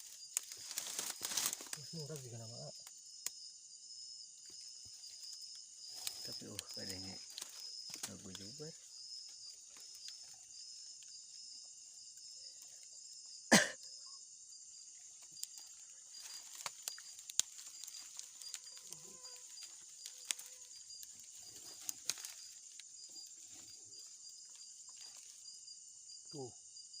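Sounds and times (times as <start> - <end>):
insects chirping: 0.0 - 27.0
faint clicks: 15.2 - 22.9.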